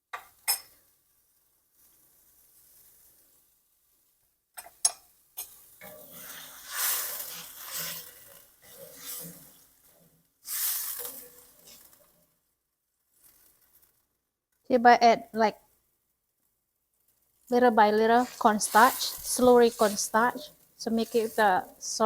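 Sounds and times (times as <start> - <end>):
stirring in a pan: 0.3 - 12.4, 13.0 - 14.1, 17.0 - 22.0.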